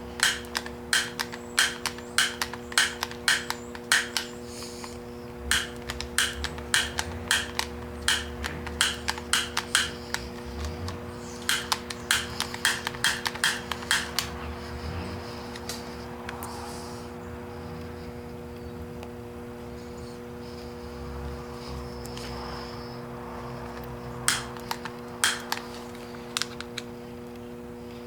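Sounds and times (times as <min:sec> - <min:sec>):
steady hum: 0:00.0 - 0:28.0
sharp clicks or taps: 0:00.2 - 0:14.4, 0:23.8 - 0:25.7.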